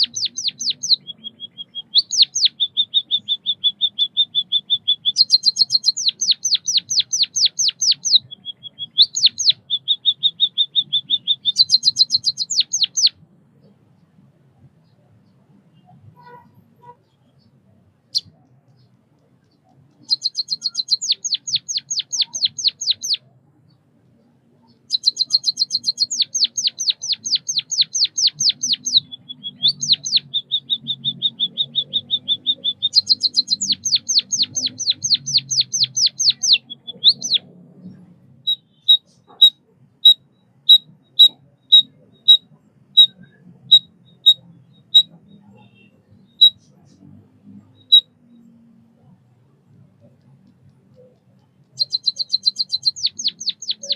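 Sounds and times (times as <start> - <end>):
bird singing sweeping notes: 0.0 - 13.2, 19.6 - 23.3, 24.6 - 46.7, 51.7 - 53.9
buzzy bird trill: 0.0 - 13.2, 20.0 - 23.3, 24.7 - 37.5, 38.4 - 46.7, 51.8 - 53.9
short bird chirps: 0.0 - 13.2, 14.8 - 23.7, 24.6 - 47.0, 51.0 - 53.9.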